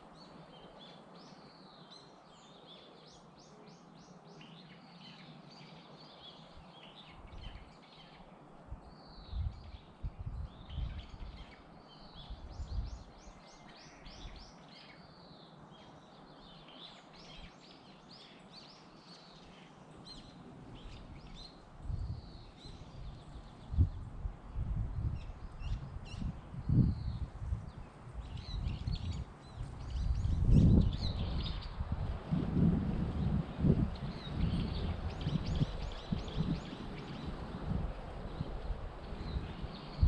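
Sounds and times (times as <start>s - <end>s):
birds singing and calling: 8.9s - 31.9s, 33.2s - 40.0s.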